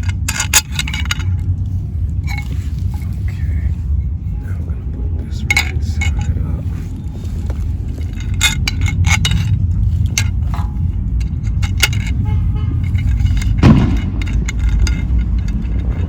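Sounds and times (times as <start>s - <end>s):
metal hardware clinking: 0.0s - 3.8s, 5.3s - 16.0s
low rumble: 0.0s - 16.0s
dull thump: 13.6s - 14.2s.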